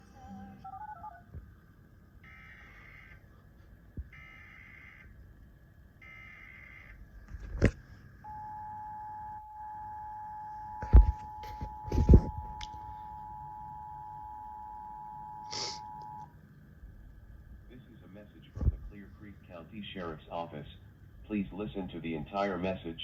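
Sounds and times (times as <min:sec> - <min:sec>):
two-tone attention signal: 0:08.3 - 0:16.3.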